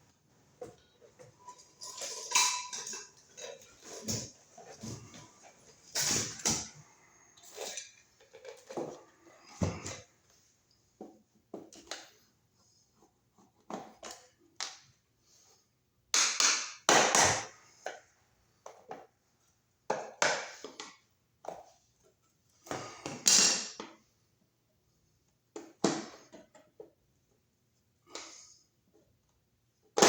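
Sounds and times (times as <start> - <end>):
hand tools knocking and clattering: 1.1 - 6.8.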